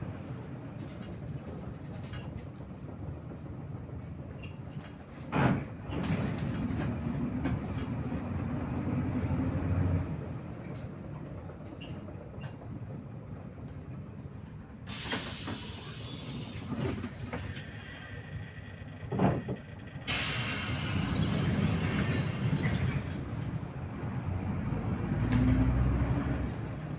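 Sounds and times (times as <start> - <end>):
bus engine and ride rumble: 0.0 - 26.9
compressed air hiss: 14.9 - 17.5, 20.1 - 23.5.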